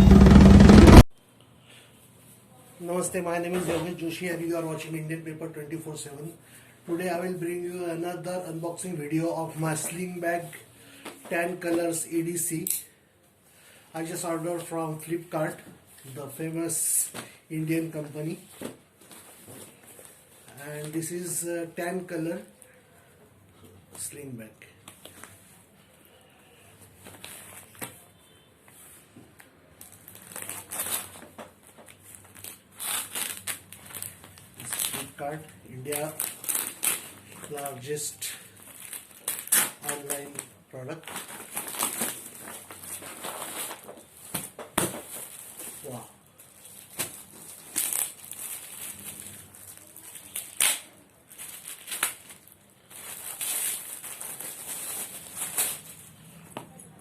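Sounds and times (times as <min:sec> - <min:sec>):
sharp crackles: 0:00.0 - 0:01.1
packaging crinkling and rustling: 0:29.8 - 0:35.2, 0:35.8 - 0:37.8, 0:38.4 - 0:56.2.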